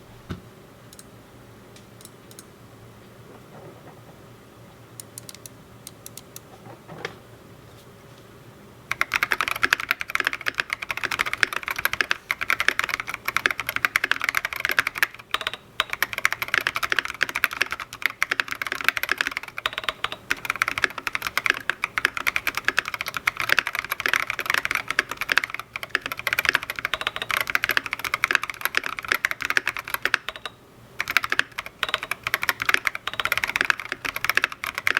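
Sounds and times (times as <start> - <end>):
mechanical keyboard typing: 8.9 - 34.9.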